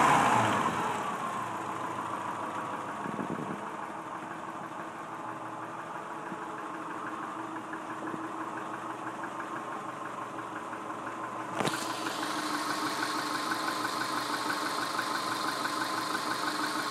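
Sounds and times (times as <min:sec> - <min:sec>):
engine idling with knocking tick: 0:00.4 - 0:16.9.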